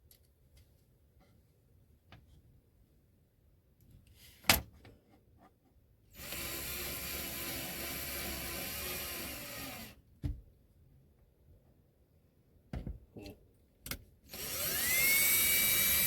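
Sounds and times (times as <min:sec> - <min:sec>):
cordless drill driving screw into wood: 0:06.2 - 0:10.0, 0:14.3 - 0:16.0.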